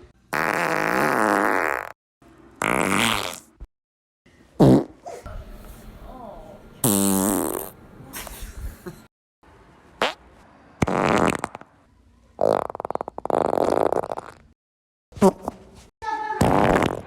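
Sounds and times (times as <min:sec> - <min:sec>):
fart sounds: 0:00.3 - 0:02.0, 0:02.6 - 0:03.7, 0:04.6 - 0:05.2, 0:06.8 - 0:07.8, 0:10.0 - 0:10.2, 0:10.8 - 0:14.6, 0:15.2 - 0:15.6, 0:16.4 - 0:17.0.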